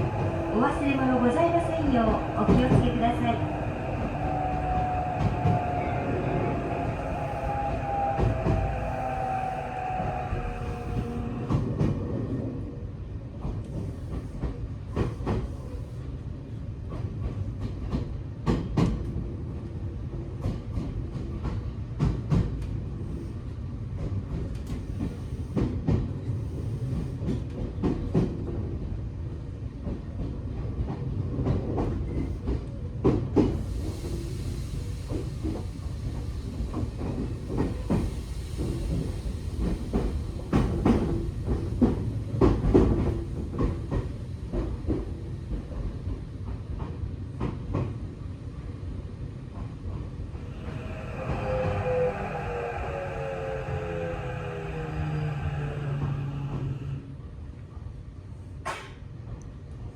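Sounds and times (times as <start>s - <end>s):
train motor whine: 0.0s - 11.8s, 50.4s - 57.2s
train rumble: 0.0s - 59.9s
hiss of air: 33.5s - 43.6s.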